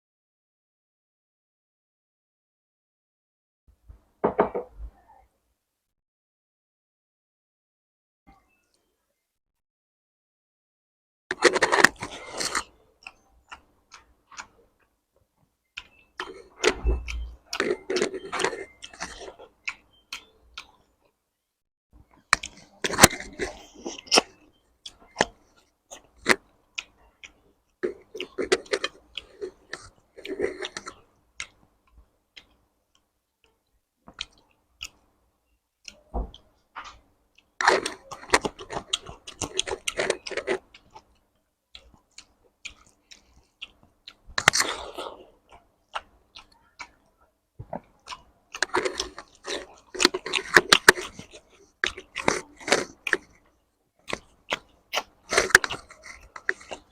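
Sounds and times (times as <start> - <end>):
wet chewing and smacking: 11.3 - 14.9, 15.6 - 21.1, 22.1 - 35.2, 35.8 - 56.9.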